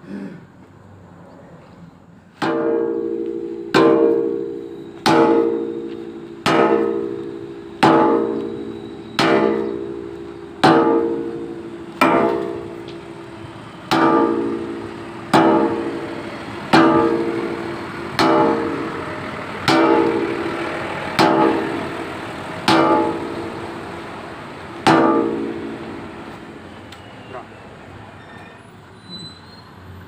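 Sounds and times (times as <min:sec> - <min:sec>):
plucked string chords strummed: 0:13.9 - 0:26.3.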